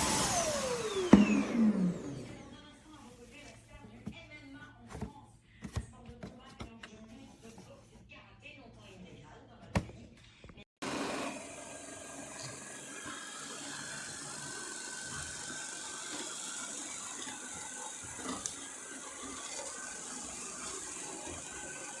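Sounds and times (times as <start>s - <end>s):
robot vacuum whirring: 0.0s - 2.5s, 10.8s - 22.0s.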